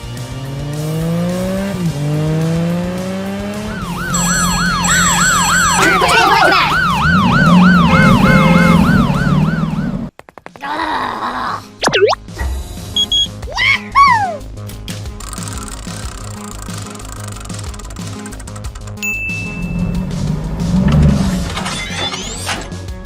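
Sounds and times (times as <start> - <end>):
rising whines: 3.4 - 10.1
siren wailing in quick sweeps: 3.8 - 10.1.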